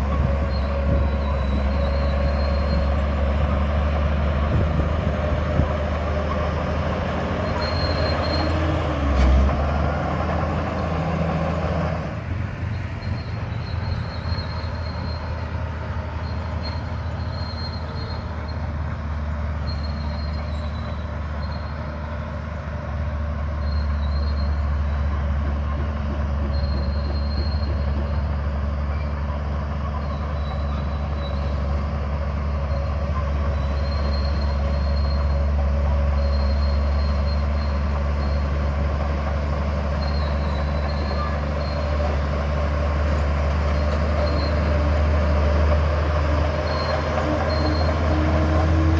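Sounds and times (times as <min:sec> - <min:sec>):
faint high squeals: 0:00.0 - 0:03.4, 0:07.4 - 0:09.2, 0:12.6 - 0:18.7, 0:19.6 - 0:21.9, 0:23.6 - 0:25.2, 0:26.4 - 0:31.8, 0:32.7 - 0:38.5, 0:39.9 - 0:42.5, 0:43.1 - 0:45.3, 0:46.4 - 0:48.7
bulldozer diesel engine running: 0:00.0 - 0:48.9.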